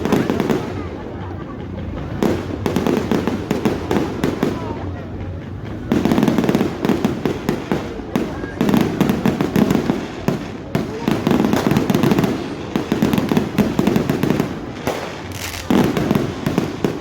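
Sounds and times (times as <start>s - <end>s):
fireworks bangs and crackles: 0.0s - 17.0s.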